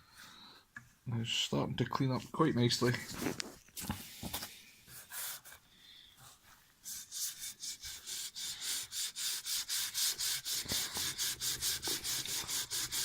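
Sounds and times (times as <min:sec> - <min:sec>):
sanding block rasping on wood: 0:07.0 - 0:13.0.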